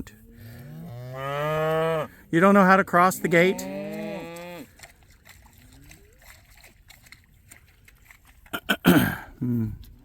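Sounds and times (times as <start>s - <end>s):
hooves splashing in water: 0.1s - 10.0s
cow mooing: 0.6s - 2.1s, 3.1s - 4.7s.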